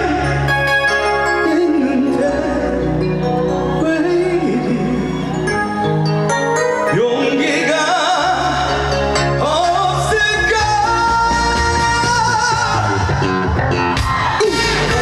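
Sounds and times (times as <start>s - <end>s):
sliding lead melody: 0.0s - 15.0s
trot band playing: 3.0s - 15.0s.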